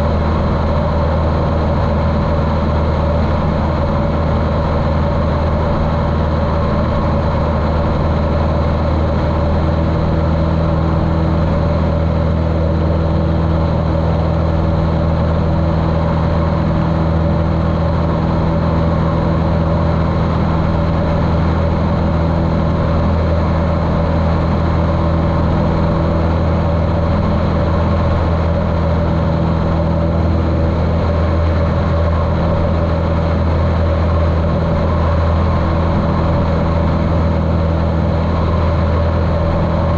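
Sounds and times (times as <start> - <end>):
muffled airplane engine droning: 0.0 - 39.9.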